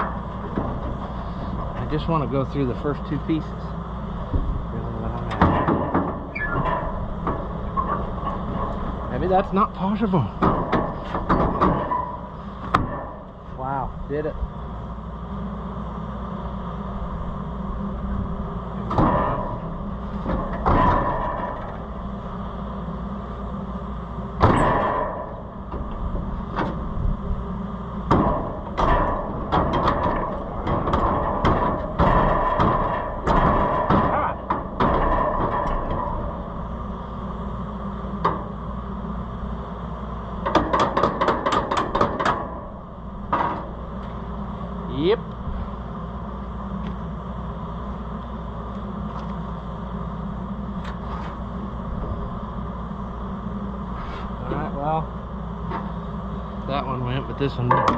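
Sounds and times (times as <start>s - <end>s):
metal clanks and rattles: 0.0s - 14.3s, 18.8s - 22.4s, 24.4s - 27.2s, 28.0s - 37.0s, 40.3s - 44.3s, 56.7s - 57.9s
steady low hum: 0.0s - 57.9s.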